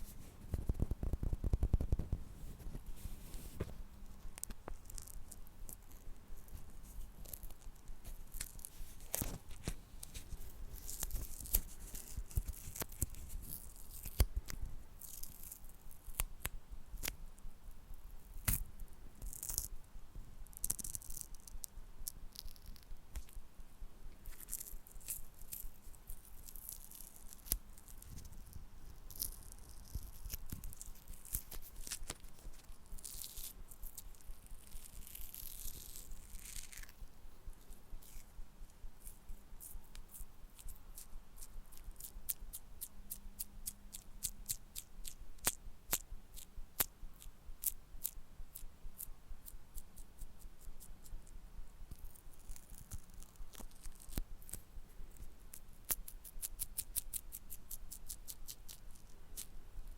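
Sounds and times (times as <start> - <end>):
scratchy rustling scrapes: 0.0 - 14.2.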